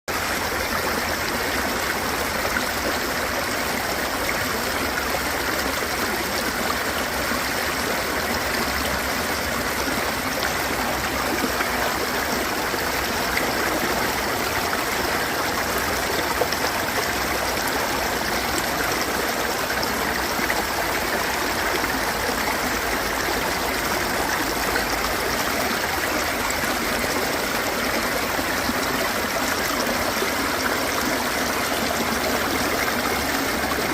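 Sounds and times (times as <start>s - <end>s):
water flowing in a stream: 0.1s - 33.9s.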